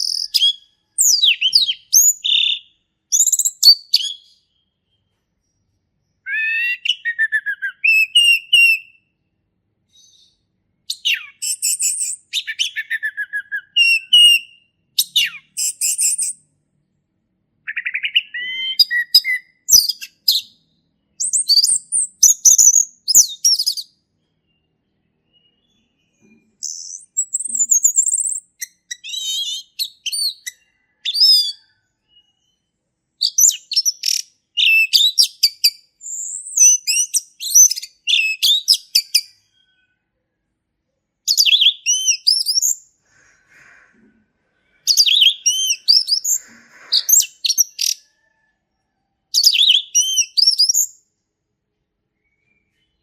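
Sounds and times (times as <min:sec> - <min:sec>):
thrush singing whistled phrases: 0:06.3 - 0:09.0, 0:10.9 - 0:16.4, 0:17.7 - 0:20.5, 0:33.2 - 0:39.4, 0:41.3 - 0:42.8, 0:49.4 - 0:51.0.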